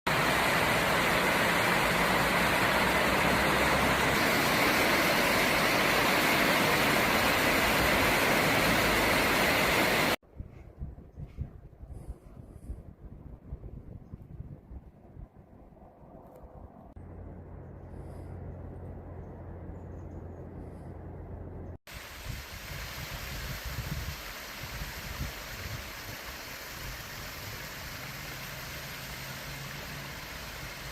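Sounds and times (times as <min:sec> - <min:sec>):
stream rushing over rocks: 0:00.1 - 0:10.2, 0:21.9 - 0:30.9
low rumble: 0:10.4 - 0:21.8.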